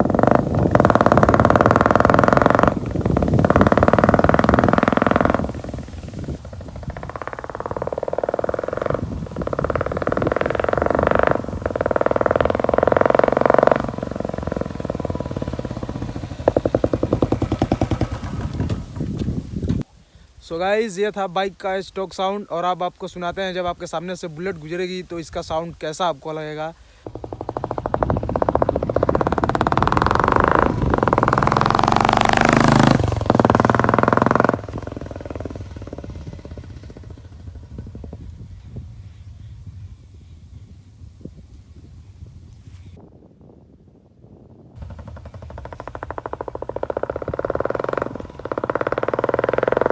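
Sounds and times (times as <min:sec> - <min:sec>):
motorcycle engine revving and idling: 0:00.0 - 0:19.9, 0:27.0 - 0:40.3, 0:44.8 - 0:49.9.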